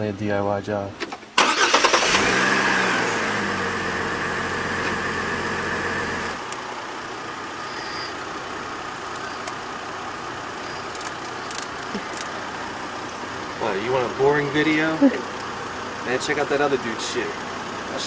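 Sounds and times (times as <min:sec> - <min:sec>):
car engine running: 0:01.3 - 0:18.0.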